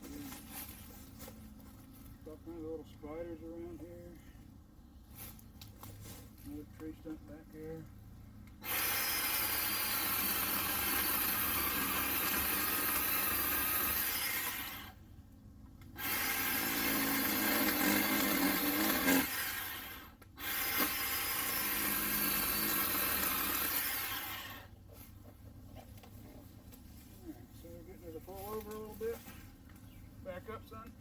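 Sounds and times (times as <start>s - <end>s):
chainsaw cutting wood: 8.6s - 15.0s, 15.8s - 24.8s.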